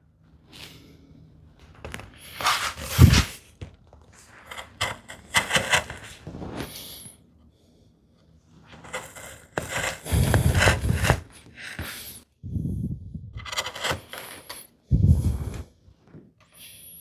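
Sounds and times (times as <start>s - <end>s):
chisel paring wood: 4.5s - 6.1s, 8.8s - 11.9s.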